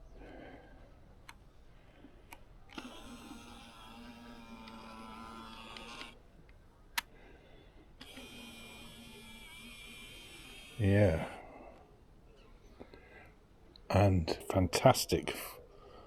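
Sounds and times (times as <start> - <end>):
sharp clicks: 2.3 - 7.2, 8.0 - 10.8
camera zoom motor whirring: 2.7 - 6.2, 8.0 - 11.3.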